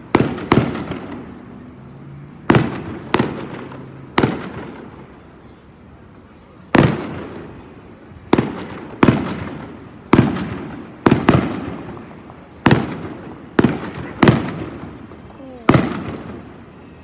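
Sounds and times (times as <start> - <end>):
fireworks shells bursting: 8.4 - 17.0.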